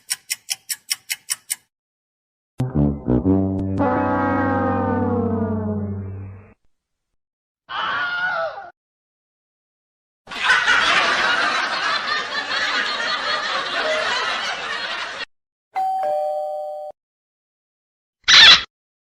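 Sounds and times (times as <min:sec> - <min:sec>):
ding-dong doorbell chime: 0:15.8 - 0:17.0.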